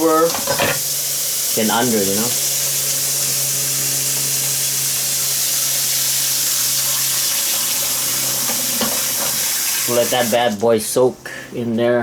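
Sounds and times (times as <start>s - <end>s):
tap running into a pot: 8.4s - 9.5s.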